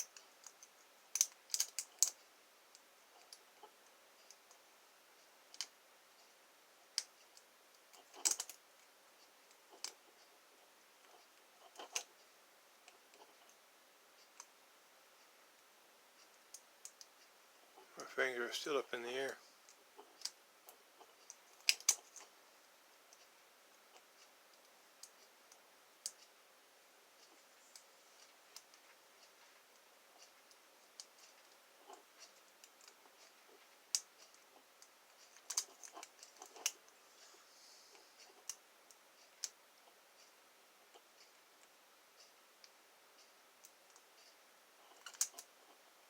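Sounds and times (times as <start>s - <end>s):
lock picks clicking in padlock: 1.2s - 2.2s.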